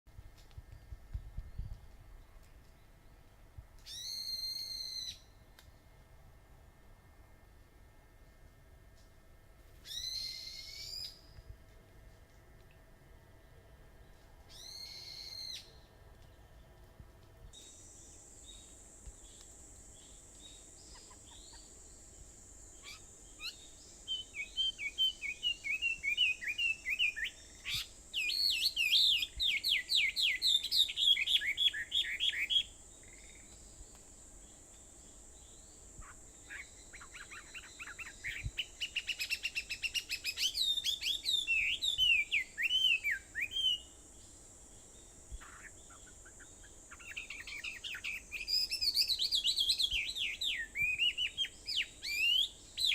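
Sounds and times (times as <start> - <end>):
high-pitched hiss: 3.8 - 5.5, 14.5 - 15.8, 17.5 - 52.9
songbirds warbling: 17.6 - 52.9.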